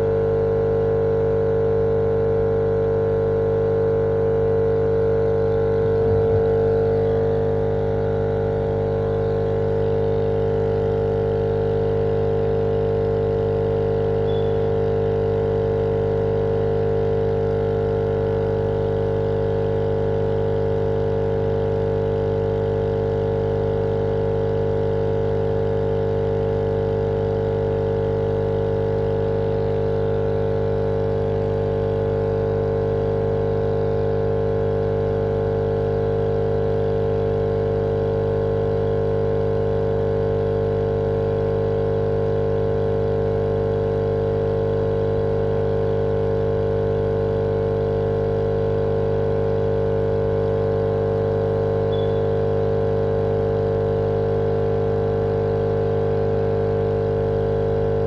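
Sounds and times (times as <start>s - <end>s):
machine hum: 4.0s - 11.3s, 13.4s - 15.8s, 51.6s - 52.6s.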